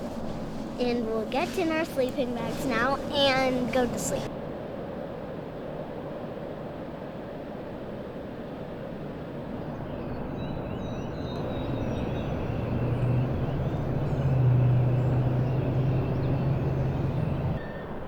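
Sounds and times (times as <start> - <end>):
distant engine rumbling: 0.0 - 4.3, 11.4 - 17.9
small birds chirping: 0.0 - 4.3, 10.1 - 17.6.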